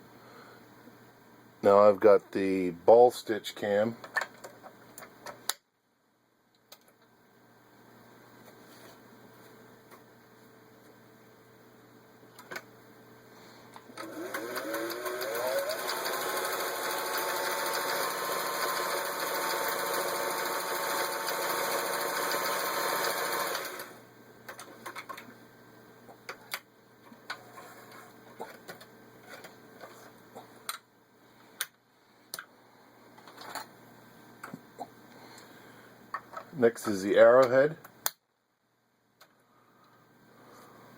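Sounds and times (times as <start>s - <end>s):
sewing machine motor whining: 14.0s - 24.0s.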